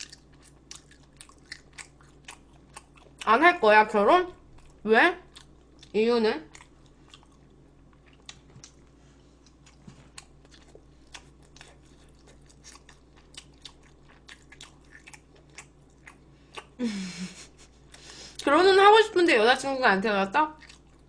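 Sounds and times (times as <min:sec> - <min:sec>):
person chewing food: 0:00.0 - 0:03.3, 0:04.5 - 0:16.8, 0:20.6 - 0:21.0.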